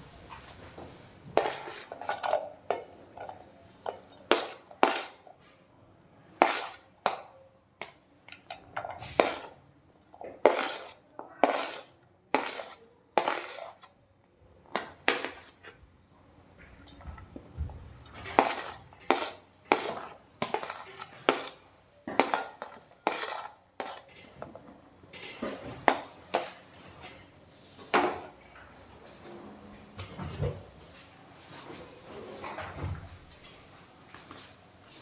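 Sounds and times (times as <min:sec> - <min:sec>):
cutlery clinking and scraping dishes: 0:01.4 - 0:05.3, 0:06.4 - 0:09.6, 0:10.2 - 0:13.9, 0:18.1 - 0:29.4.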